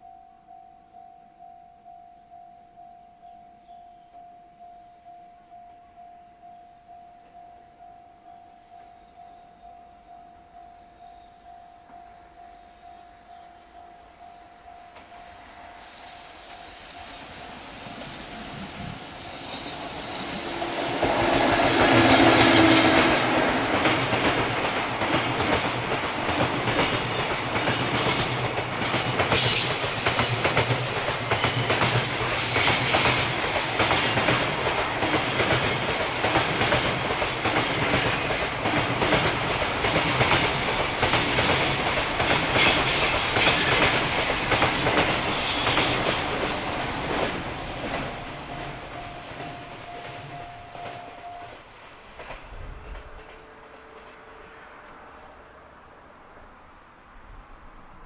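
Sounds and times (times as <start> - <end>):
freight train passing: 8.2 - 58.0
wagons clickety-clack over rail joints: 22.0 - 54.5.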